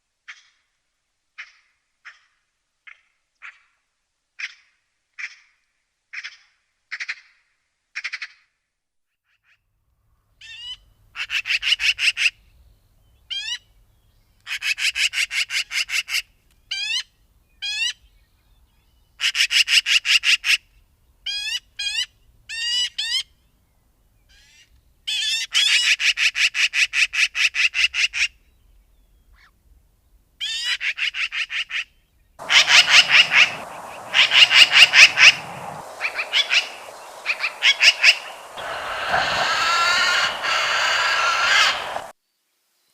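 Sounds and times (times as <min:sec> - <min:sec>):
magpie chattering rattle: 0:32.4 - 0:42.1.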